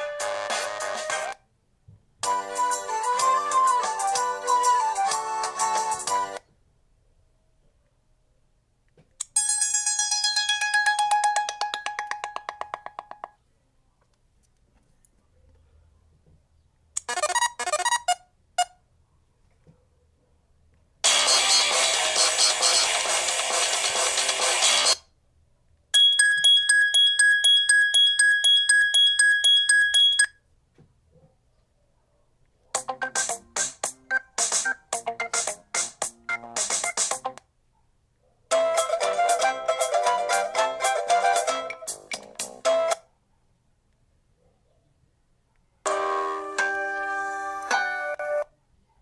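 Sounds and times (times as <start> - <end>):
fast repeating bell-like ringtone: 26.0 - 30.4.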